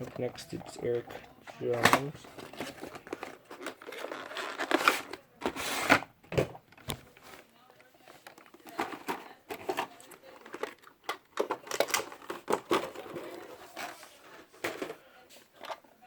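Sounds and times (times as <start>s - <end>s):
packaging crinkling and tearing: 1.8s - 5.2s.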